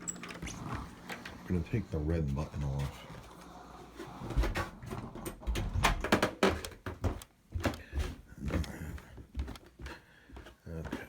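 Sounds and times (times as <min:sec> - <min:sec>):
hard objects clicking and clattering: 0:04.4 - 0:07.8.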